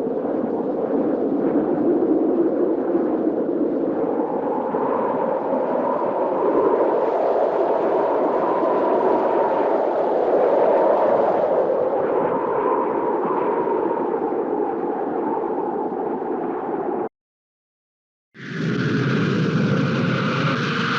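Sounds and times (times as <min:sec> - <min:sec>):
storm wind rushing: 0:00.0 - 0:17.1, 0:18.4 - 0:20.9.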